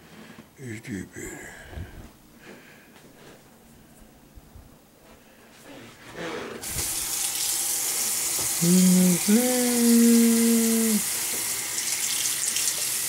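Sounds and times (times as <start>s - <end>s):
water running into sink: 6.6s - 13.0s.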